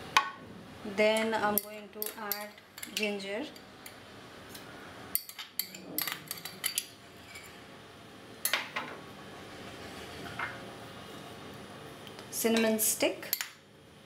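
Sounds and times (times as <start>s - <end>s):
utensils clinking against dishes: 1.6s - 3.2s, 5.2s - 7.5s.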